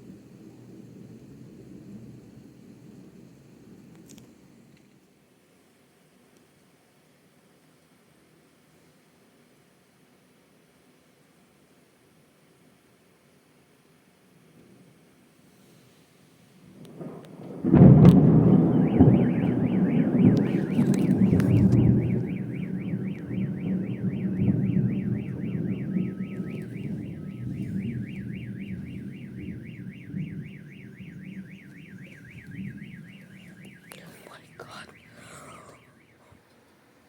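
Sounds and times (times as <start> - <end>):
thunderclap rumbling: 16.8 - 36.4
car alarm warbling siren: 16.9 - 36.4.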